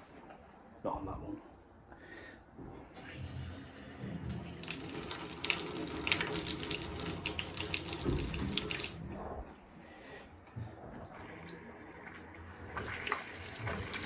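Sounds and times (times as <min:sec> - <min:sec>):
water spitting from a tap: 0:04.4 - 0:09.0.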